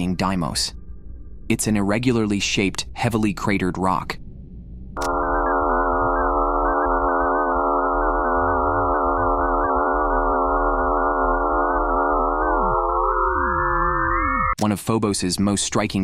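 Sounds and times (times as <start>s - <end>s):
eerie electronic drone: 4.1s - 14.6s
click: 5.0s - 5.2s.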